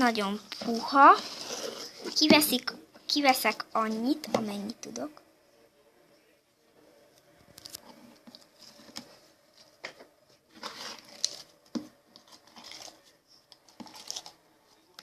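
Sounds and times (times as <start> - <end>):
slime crackling and squelching: 0.0 - 5.1, 10.6 - 14.4.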